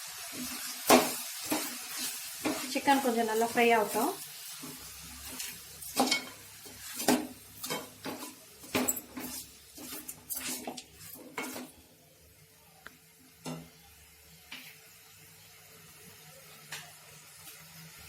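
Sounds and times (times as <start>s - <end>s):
food sizzling: 0.0s - 18.0s
spoon scraping a frying pan: 0.3s - 11.8s.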